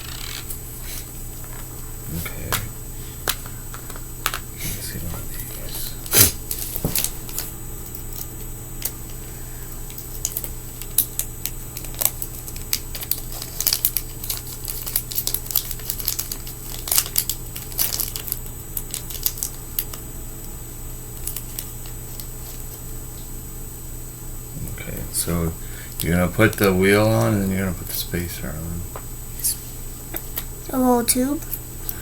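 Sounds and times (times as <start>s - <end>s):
steady background hum: 0.0s - 32.0s
packaging crinkling: 5.8s - 9.2s, 9.8s - 20.0s, 21.1s - 22.8s.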